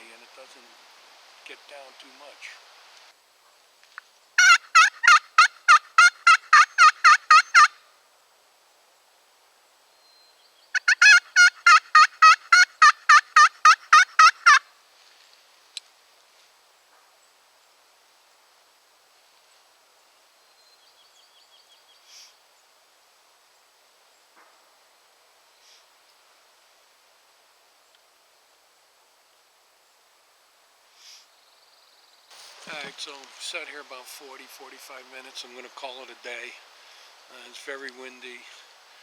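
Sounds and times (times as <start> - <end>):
turkey call rapid yelps: 4.4 - 7.8, 10.8 - 14.6.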